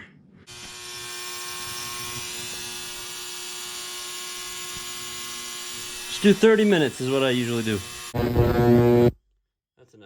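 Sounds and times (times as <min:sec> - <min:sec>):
ultrasonic cleaner humming: 0:00.5 - 0:08.3.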